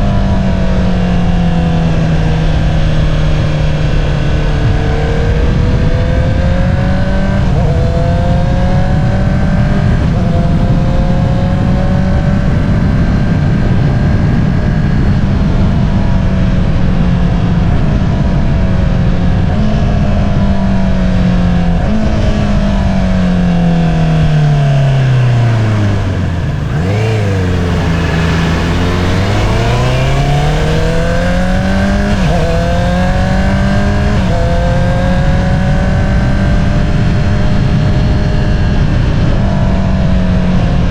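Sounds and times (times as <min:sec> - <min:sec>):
motorcycle engine revving: 0:00.0 - 0:40.9.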